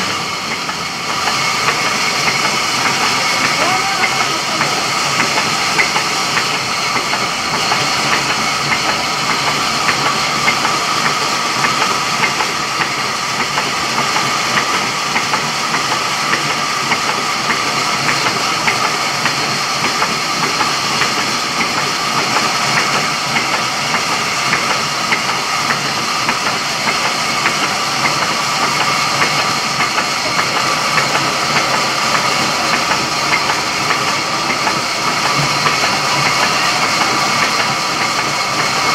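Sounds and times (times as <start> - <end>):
sawmill saw cutting wood: 0.0 - 38.9.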